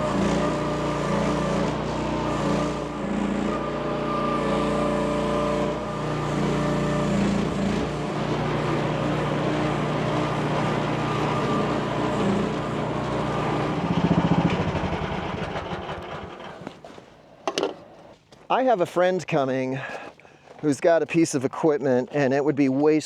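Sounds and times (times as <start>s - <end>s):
excavator engine running: 0.0s - 17.1s.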